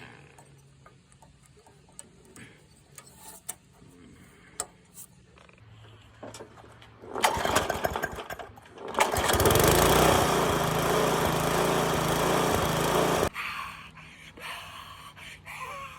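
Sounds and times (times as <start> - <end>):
lawn mower engine starting: 5.9 - 13.3.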